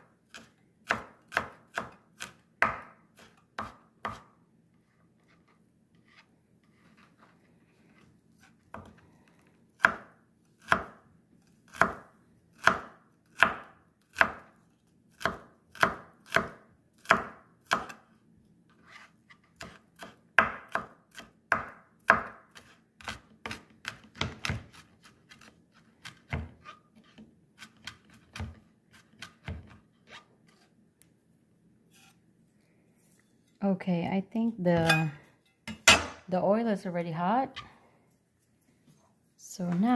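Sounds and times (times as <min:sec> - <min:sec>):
knife chopping on cutting board: 0:00.3 - 0:04.3, 0:09.8 - 0:11.0, 0:11.7 - 0:14.5, 0:15.2 - 0:18.0, 0:19.6 - 0:29.8.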